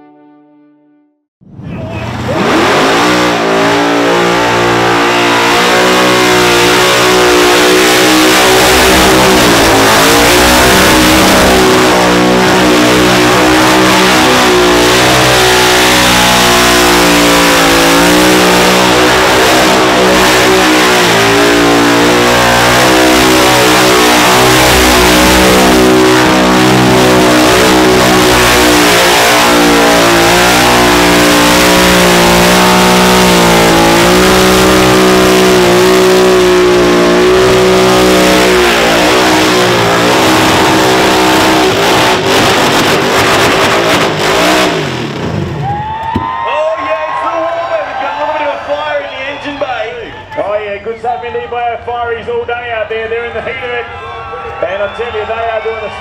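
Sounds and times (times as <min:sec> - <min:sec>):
car engine revving hard: 0:02.0 - 0:45.6.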